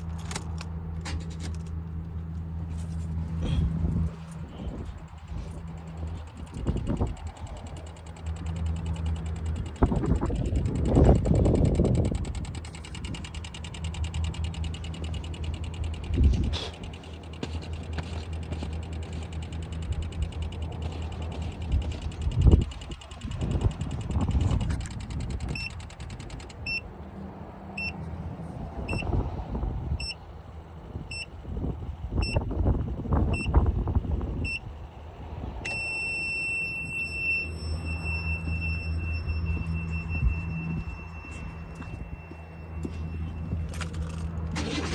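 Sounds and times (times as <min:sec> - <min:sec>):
clunks and handling noises: 0:00.0 - 0:09.1, 0:42.8 - 0:44.9
steady low hum: 0:00.0 - 0:28.6, 0:31.6 - 0:44.9
electronic beeper beeping: 0:35.7 - 0:43.7.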